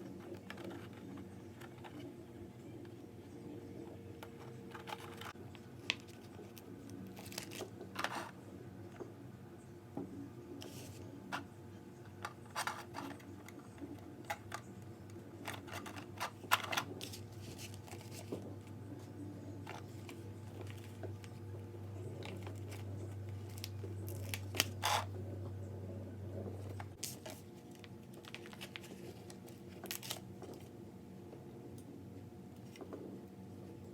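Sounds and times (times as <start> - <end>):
low steady hum: 0.0 - 33.9
plastic parts clattering: 15.4 - 18.4.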